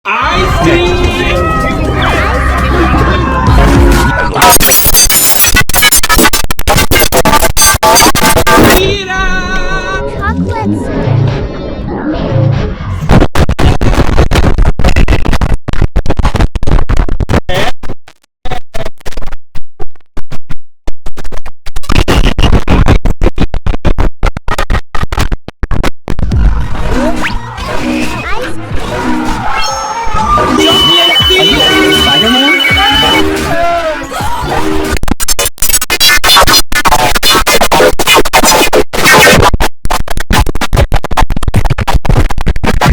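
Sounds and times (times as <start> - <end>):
stuttering processed computer sound: 0.4 - 8.8, 26.8 - 33.9, 34.5 - 42.9.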